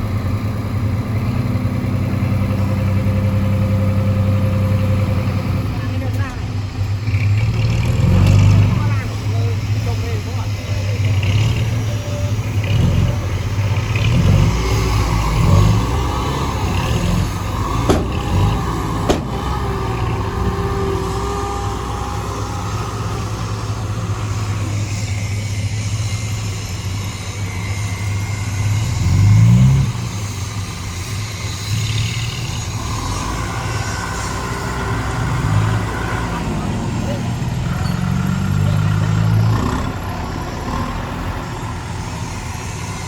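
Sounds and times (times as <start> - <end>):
heavy vehicle engine running: 0.0 - 43.0
sharp metallic clanks: 17.7 - 20.0.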